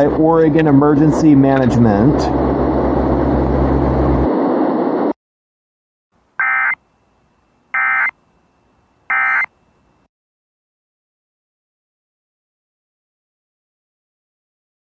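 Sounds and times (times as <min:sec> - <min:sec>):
steady hiss with low hum: 0:06.2 - 0:10.1.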